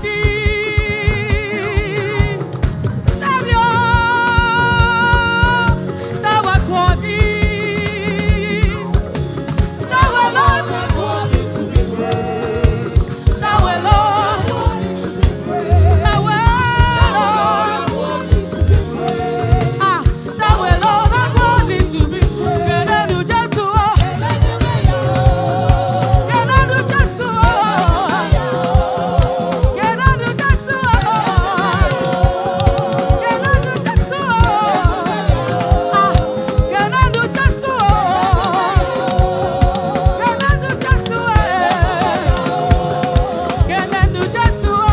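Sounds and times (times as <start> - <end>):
steady drum beat: 0.0 - 44.9
choir singing: 9.8 - 44.9.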